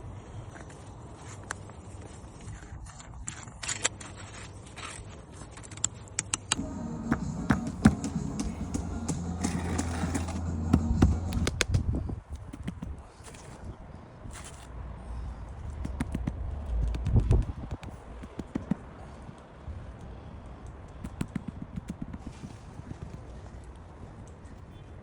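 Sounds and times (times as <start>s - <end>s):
engine running steadily: 6.6s - 11.8s
scraping: 6.6s - 11.8s.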